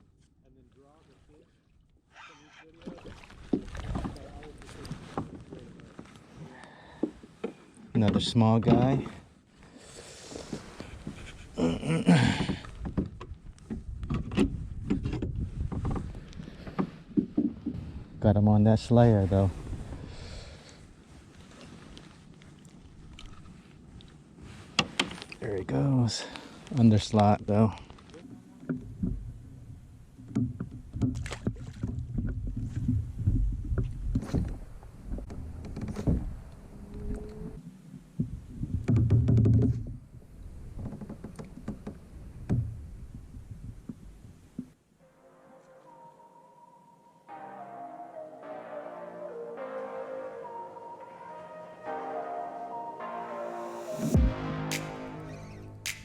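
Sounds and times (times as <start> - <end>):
knocks and taps on plastic kayak: 16.7 - 17.8, 38.2 - 40.0
brief rushing noise: 53.0 - 56.0
low rumble: 54.1 - 56.0.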